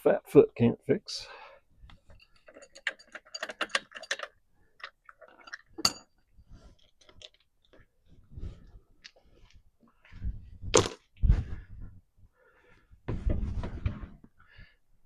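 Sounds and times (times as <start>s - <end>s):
metal tools clicking: 2.1s - 4.4s.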